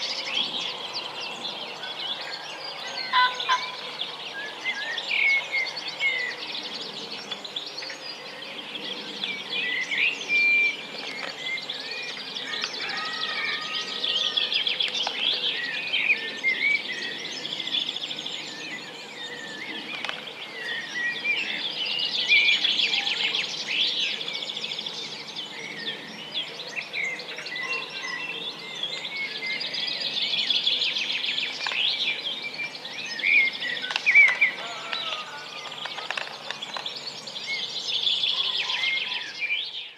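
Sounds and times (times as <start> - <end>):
songbirds singing and chirping: 0.0 - 39.9.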